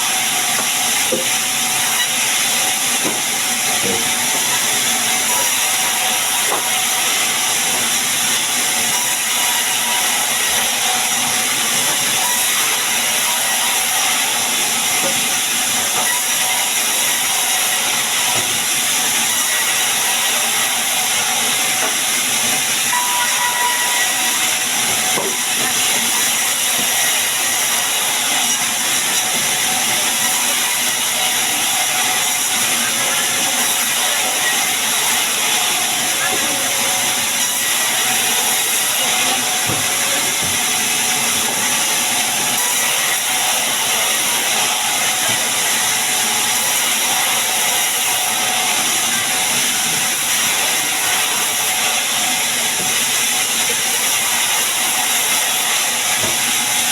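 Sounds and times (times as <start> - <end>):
sawmill saw hissing: 0.0 - 56.9.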